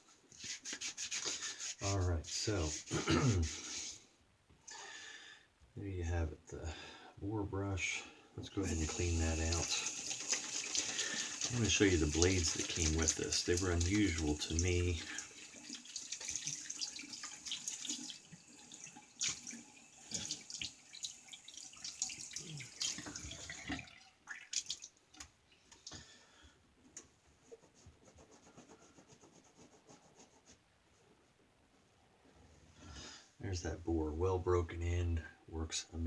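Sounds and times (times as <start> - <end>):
shaving brush being rinsed: 0.4 - 3.1, 8.6 - 24.8
tap water running into sink: 8.6 - 25.3
water dripping: 8.6 - 26.0.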